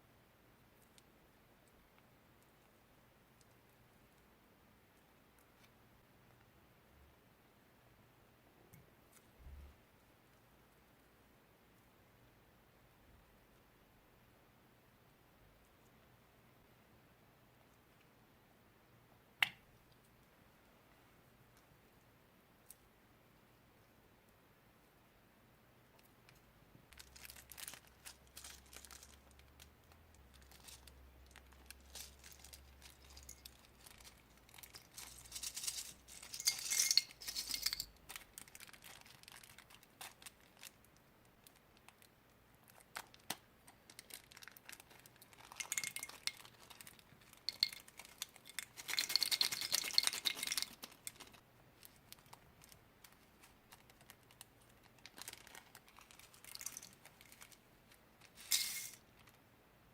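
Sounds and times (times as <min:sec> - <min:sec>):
containers and utensils clinking: 0:34.7 - 0:37.9, 0:58.4 - 0:59.0.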